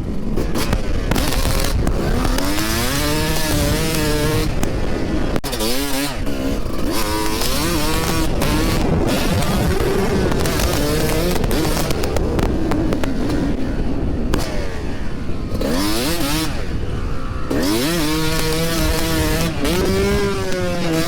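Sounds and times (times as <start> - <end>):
dirt bike engine revving: 0.0 - 21.0
wind buffeting microphone: 0.0 - 21.0
microphone crackling: 0.1 - 5.4, 6.6 - 14.6.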